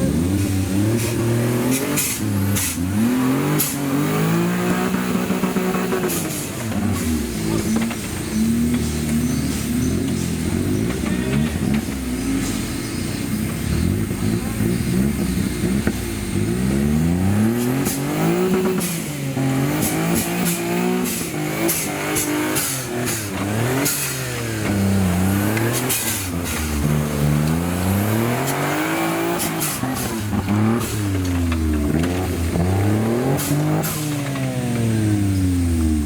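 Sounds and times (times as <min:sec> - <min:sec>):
engine revving: 0:00.0 - 0:36.0
sharp clicks and knocks: 0:29.4 - 0:34.9.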